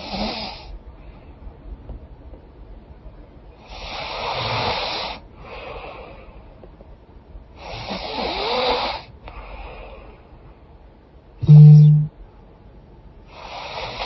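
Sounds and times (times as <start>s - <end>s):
woman snoring: 7.6s - 9.0s, 11.5s - 11.9s.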